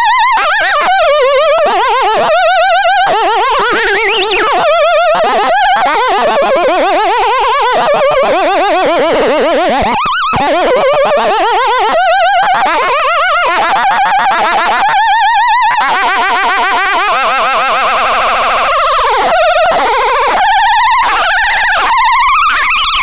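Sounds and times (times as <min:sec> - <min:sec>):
loud warbling electronic tones: 0:00.4 - 0:15.9.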